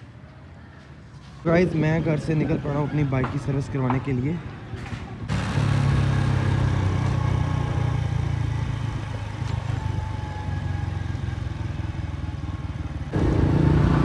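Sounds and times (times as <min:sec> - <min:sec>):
motorcycle engine running: 0:05.3 - 0:14.0.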